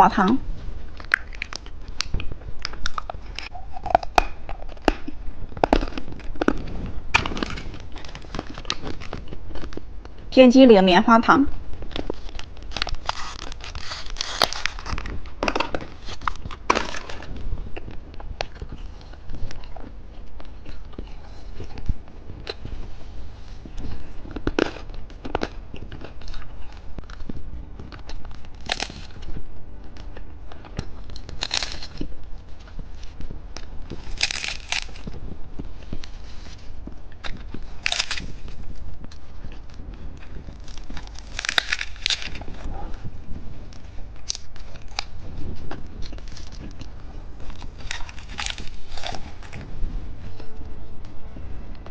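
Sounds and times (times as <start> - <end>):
plastic packaging crinkling: 0.8 - 9.9, 11.7 - 22.8, 30.8 - 50.6
plastic tearing: 0.9 - 9.9, 11.8 - 19.7, 27.9 - 29.3, 30.8 - 32.2, 33.6 - 35.1, 37.2 - 39.2, 40.2 - 42.7, 43.7 - 49.7.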